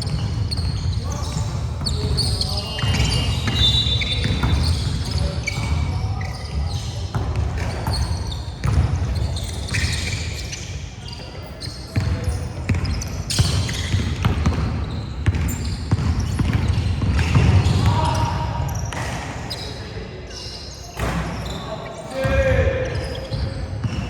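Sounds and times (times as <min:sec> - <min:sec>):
basketball bouncing on court: 0:00.0 - 0:10.6, 0:11.9 - 0:19.3, 0:22.2 - 0:24.0
echoing hall noise: 0:13.2 - 0:24.0
players shouting: 0:17.6 - 0:18.7.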